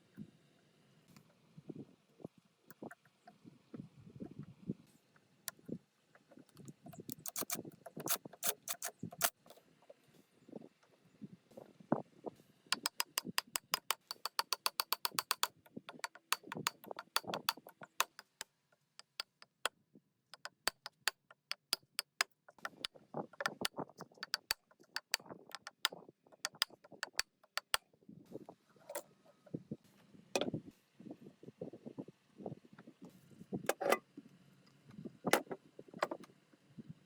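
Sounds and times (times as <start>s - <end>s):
hand tools clicking and knocking on metal: 6.5s - 9.4s, 12.8s - 18.4s, 19.0s - 19.7s, 20.4s - 27.8s
ratchet ticking: 6.9s - 9.3s, 12.8s - 18.4s, 20.4s - 27.8s.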